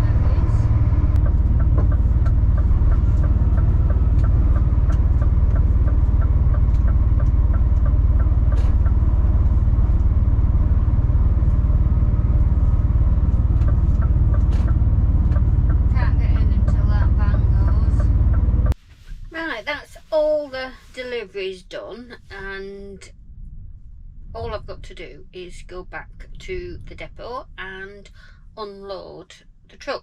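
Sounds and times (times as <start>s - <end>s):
diesel lorry engine running: 0.0s - 18.8s.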